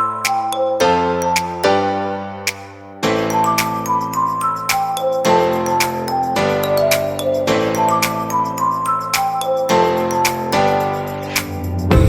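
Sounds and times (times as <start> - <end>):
background music with light melody: 0.0 - 12.0
sharp percussive ticks: 2.5 - 2.7.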